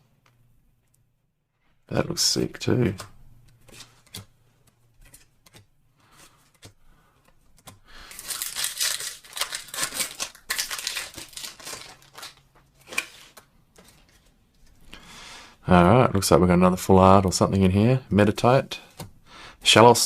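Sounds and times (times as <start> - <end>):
foil wrapper tearing and crinkling: 8.0 - 13.4.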